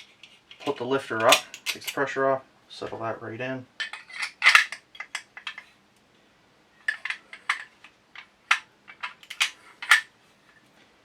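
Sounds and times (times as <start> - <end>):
small steel parts clicking: 0.0 - 2.0, 3.8 - 5.7, 6.8 - 10.1.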